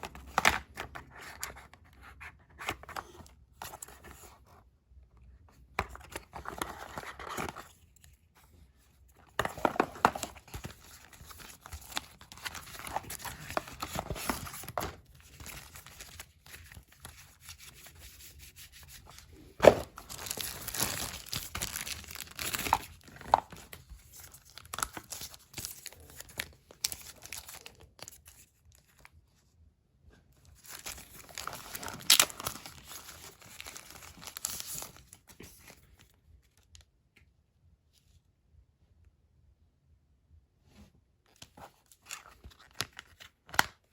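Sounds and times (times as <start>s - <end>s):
packaging rustling and tearing: 9.4s - 17.8s, 19.1s - 29.1s, 30.6s - 35.8s.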